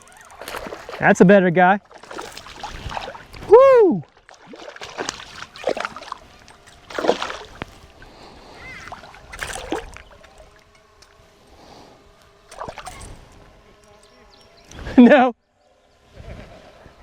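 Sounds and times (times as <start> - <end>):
fish splashing at surface: 0.0 - 1.0, 1.8 - 8.0, 8.6 - 10.7.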